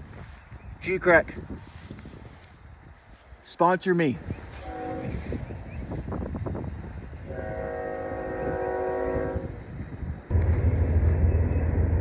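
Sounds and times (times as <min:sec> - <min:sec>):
horn sounding: 0:04.6 - 0:05.4, 0:07.3 - 0:09.5.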